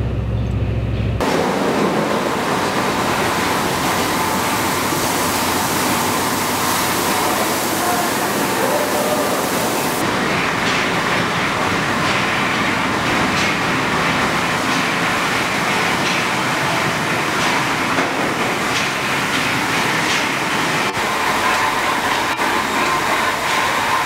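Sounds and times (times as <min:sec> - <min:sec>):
machinery rumble: 0:00.0 - 0:24.0
water spray rushing: 0:01.2 - 0:10.0.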